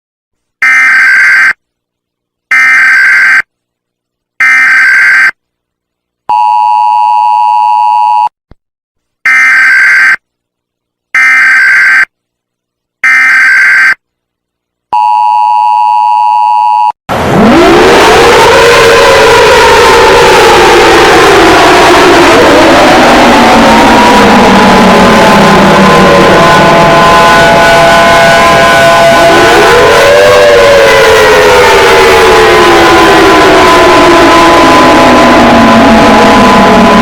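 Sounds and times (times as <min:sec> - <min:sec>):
emergency alert buzzing tones: 0:00.6 - 0:01.6, 0:02.5 - 0:03.5, 0:04.4 - 0:05.4, 0:09.3 - 0:10.2, 0:11.2 - 0:12.1, 0:13.0 - 0:14.0
rising and falling siren: 0:17.1 - 0:37.0.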